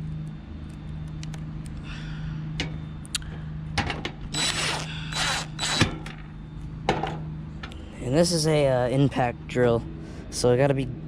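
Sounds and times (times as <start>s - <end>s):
low hum: 0.0s - 10.3s
impact drill driving screws: 4.4s - 5.9s.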